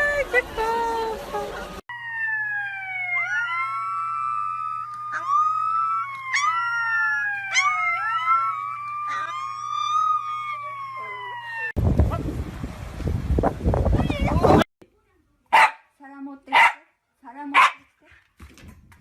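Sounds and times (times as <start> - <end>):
wailing siren: 1.9 - 11.8
dog howling: 2.2 - 11.8.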